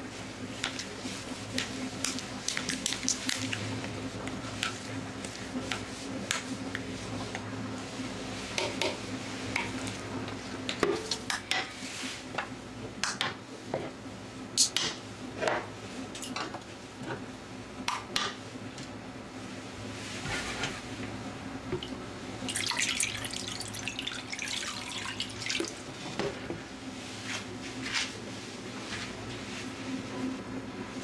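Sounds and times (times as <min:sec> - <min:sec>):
tap water running into sink: 0:21.8 - 0:26.0.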